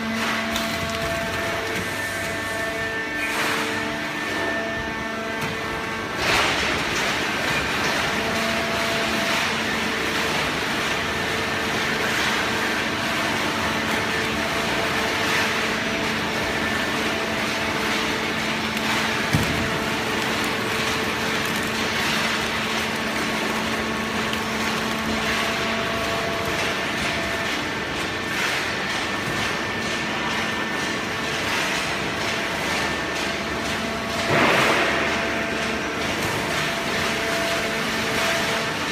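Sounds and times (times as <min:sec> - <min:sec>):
hydraulic baler motor humming: 0:13.4 - 0:28.9.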